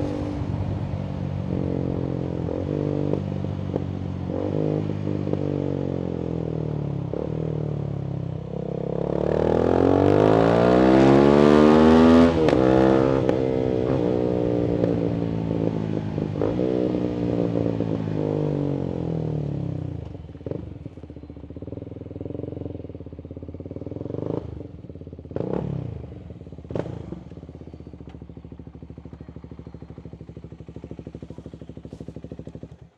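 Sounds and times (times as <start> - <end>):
motorcycle engine revving: 0.0 - 6.4, 8.5 - 32.9.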